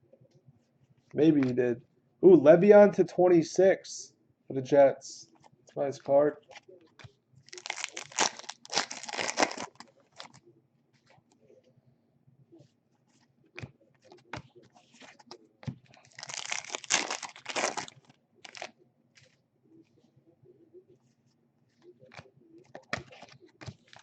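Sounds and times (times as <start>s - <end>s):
foil wrappers crinkling and tearing: 7.5s - 10.4s, 16.0s - 18.7s.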